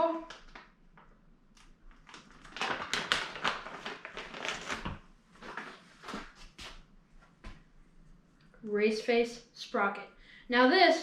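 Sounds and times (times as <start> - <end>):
packaging crackling and rustling: 0.3 - 6.8.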